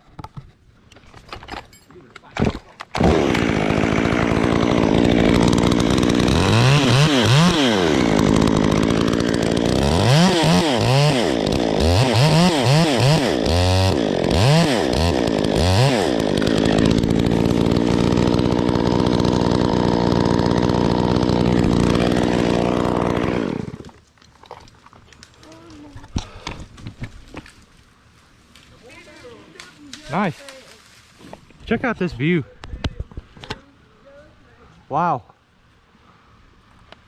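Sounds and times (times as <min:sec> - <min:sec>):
chainsaw cutting wood: 0:02.4 - 0:25.3.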